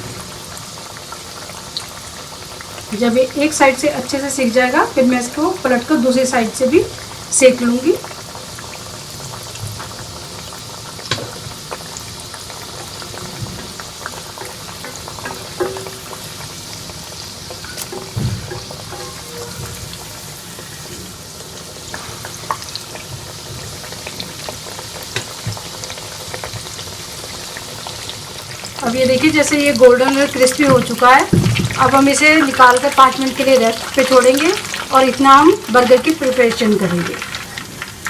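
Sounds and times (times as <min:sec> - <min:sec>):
chicken sizzling in hot oil: 0:00.0 - 0:38.0
oil popping and crackling: 0:06.8 - 0:38.0.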